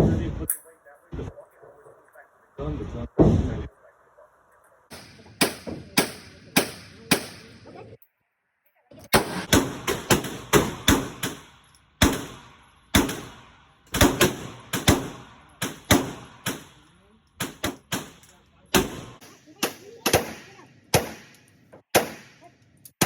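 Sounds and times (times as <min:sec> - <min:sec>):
gunshots with echo: 0:04.9 - 0:07.7, 0:09.2 - 0:22.5.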